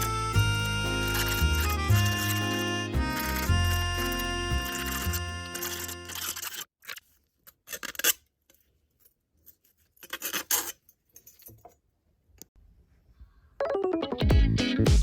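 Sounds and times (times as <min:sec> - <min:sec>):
background music: 0:00.0 - 0:06.2, 0:13.6 - 0:15.0
thin metal scraping and rasping: 0:00.0 - 0:11.4.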